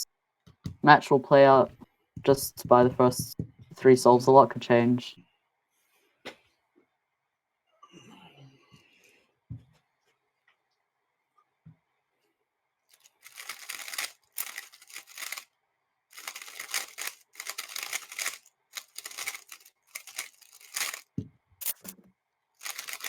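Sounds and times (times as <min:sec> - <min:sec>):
rapid plastic cube clicking: 0:13.0 - 0:15.4, 0:16.1 - 0:21.9, 0:22.6 - 0:23.0.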